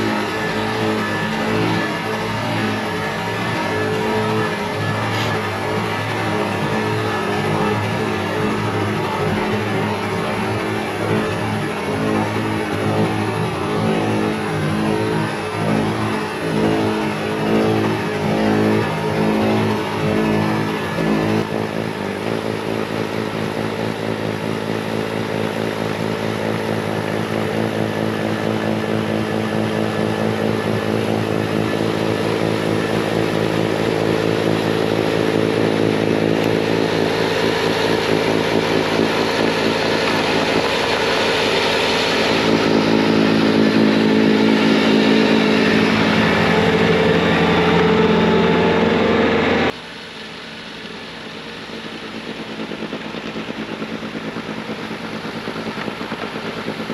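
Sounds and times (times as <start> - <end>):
diesel engine at full throttle: 0.0 - 56.9
snowblower through wet snow: 0.0 - 56.9.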